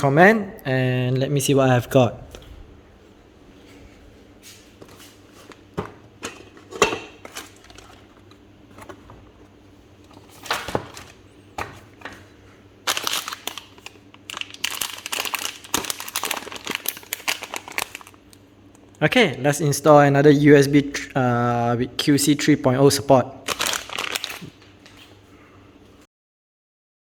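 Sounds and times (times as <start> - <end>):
plastic packaging crinkling: 4.8 - 18.4, 23.4 - 25.2.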